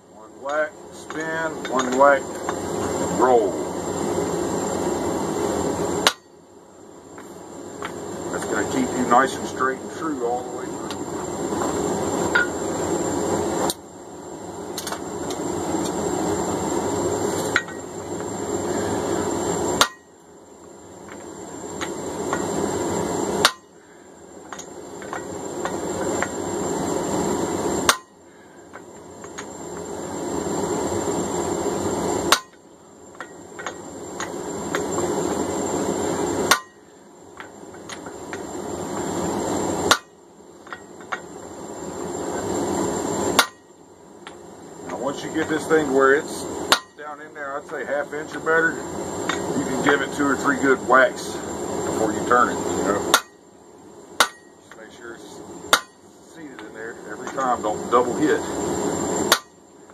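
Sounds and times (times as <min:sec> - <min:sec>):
hammer striking hot punch: 0:06.0 - 0:06.4, 0:19.8 - 0:20.2, 0:23.4 - 0:23.8, 0:27.8 - 0:28.2, 0:32.3 - 0:32.6, 0:36.5 - 0:36.8, 0:39.9 - 0:40.2, 0:43.4 - 0:43.7, 0:46.7 - 0:47.0, 0:53.1 - 0:53.4, 0:54.2 - 0:54.6, 0:55.7 - 0:56.0, 0:59.3 - 0:59.6.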